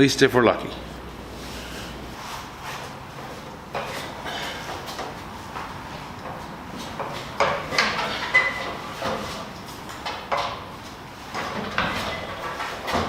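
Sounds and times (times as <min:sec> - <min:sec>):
metal hardware knocking and rattling: 0:07.0 - 0:09.4, 0:10.0 - 0:10.7, 0:11.3 - 0:13.0.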